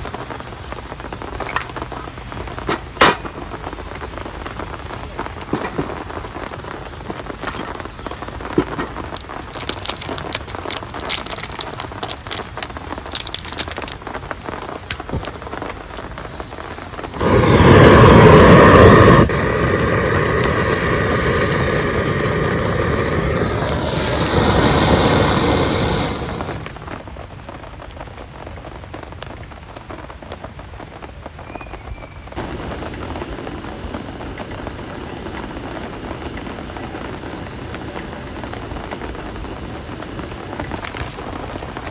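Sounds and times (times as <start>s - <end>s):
rain on a tent: 0.0s - 41.9s
sharp raindrop ticks: 6.2s - 30.6s
loud rush of noise: 17.1s - 27.1s, 32.4s - 41.9s.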